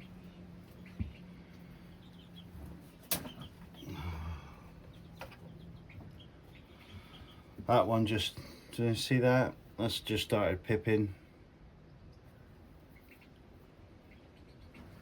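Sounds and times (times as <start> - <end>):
chickens clucking: 0.0 - 8.4, 11.8 - 15.0
low steady hum: 0.0 - 15.0.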